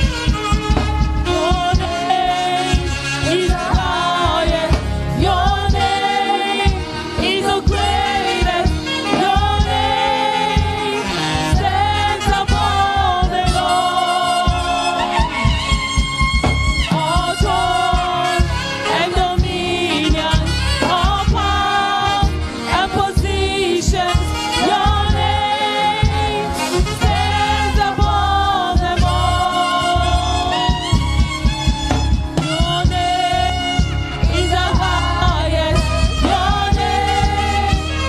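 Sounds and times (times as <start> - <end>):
gospel singing with instruments: 0.0 - 38.0.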